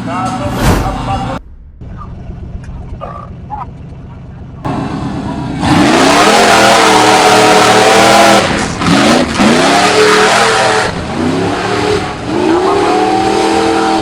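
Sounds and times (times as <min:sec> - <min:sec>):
loud rushing noise: 0:00.3 - 0:03.0
engine revving hard: 0:04.7 - 0:14.0.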